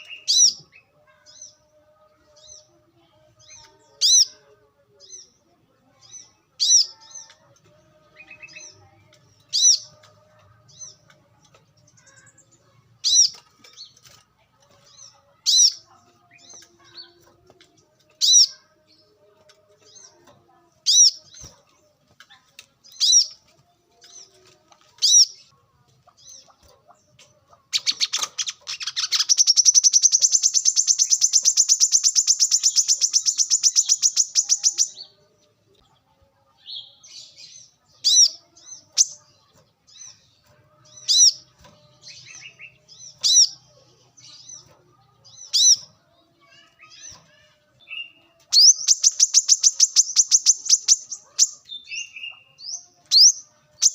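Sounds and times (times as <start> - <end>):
sharp high bird calls: 27.8 - 35.0, 47.9 - 53.9.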